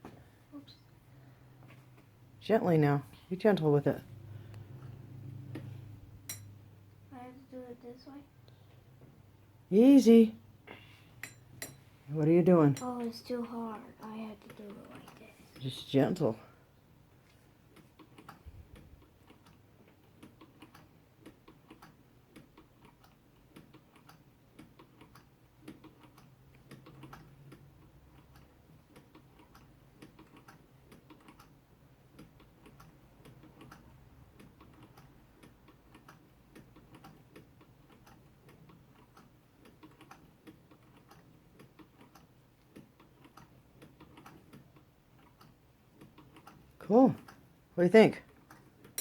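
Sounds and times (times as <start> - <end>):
hand-crank sewing machine clicking: 17.8 - 47.4.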